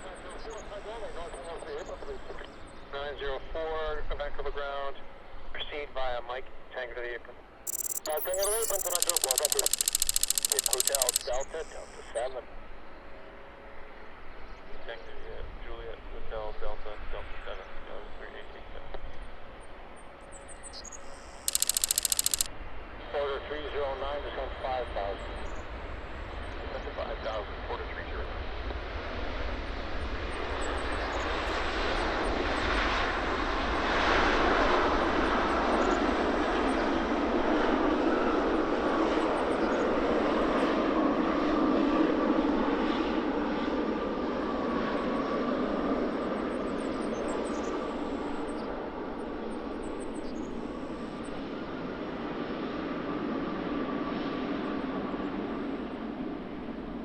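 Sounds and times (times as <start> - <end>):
steady whine: 7.7 - 12.2, 20.8 - 22.5
jet airliner engine noise: 23.4 - 57.0.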